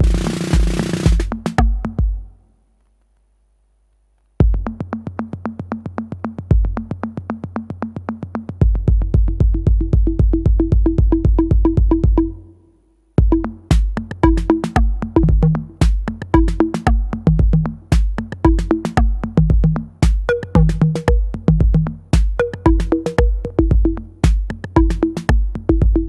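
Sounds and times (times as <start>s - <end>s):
drum machine electro beat: 0.0s - 2.3s, 4.4s - 12.4s, 13.2s - 26.0s.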